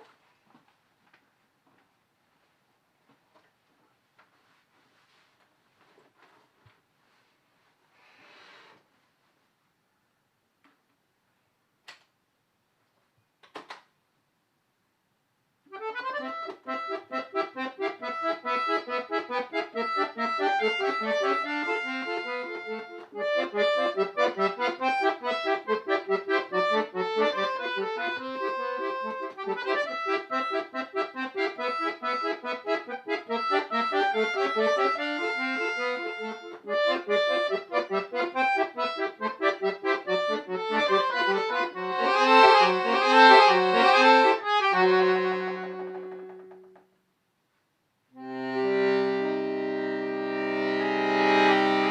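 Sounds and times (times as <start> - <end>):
solo accordion music: 15.7 - 46.8, 48.2 - 51.9.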